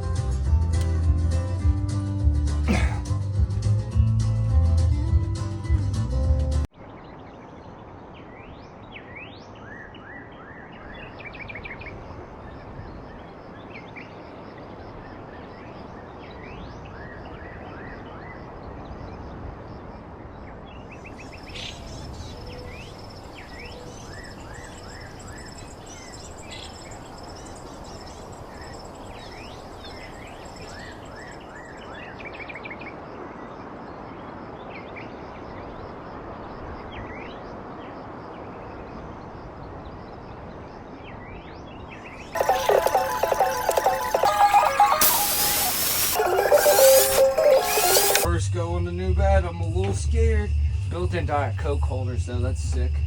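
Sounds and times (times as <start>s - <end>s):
birds chirping: 20.6s - 32.6s, 41.9s - 48.3s
background hiss: 42.4s - 48.3s
thin high buzz: 42.4s - 48.3s.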